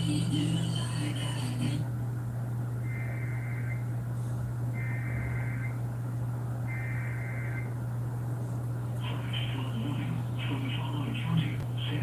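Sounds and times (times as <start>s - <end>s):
steady low hum: 0.0s - 12.0s
digital data tones over radio: 6.7s - 7.7s.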